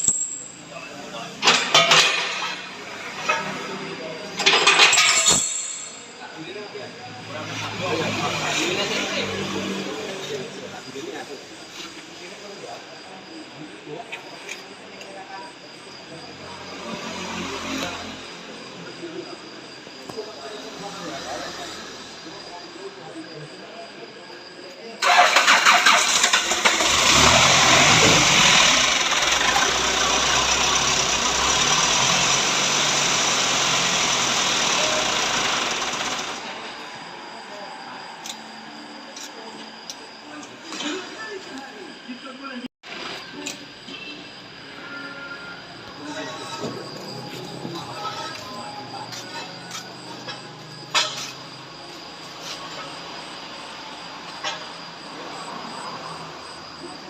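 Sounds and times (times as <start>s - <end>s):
vehicle engine idling: 25.0s - 37.4s.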